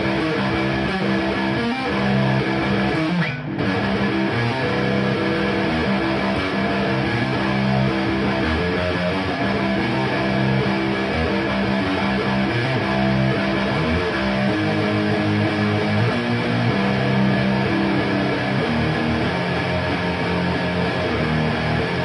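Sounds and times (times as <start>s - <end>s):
distorted electric guitar chords: 0.0s - 22.0s.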